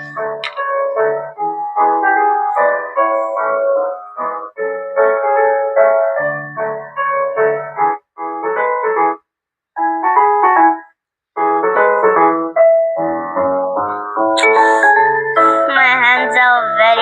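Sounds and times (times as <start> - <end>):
keyboard melody: 0.0 - 17.0.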